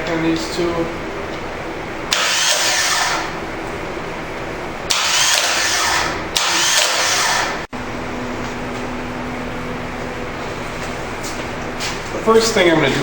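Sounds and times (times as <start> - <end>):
starter motor spinning with whine: 2.1 - 3.4, 4.9 - 8.1.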